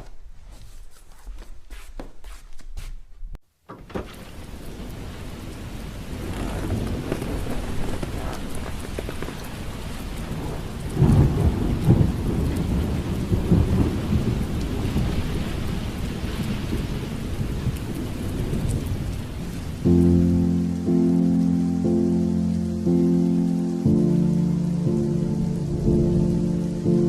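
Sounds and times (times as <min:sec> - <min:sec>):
steady rain: 0:03.9 - 0:27.0
rumble of thunder: 0:04.2 - 0:20.5.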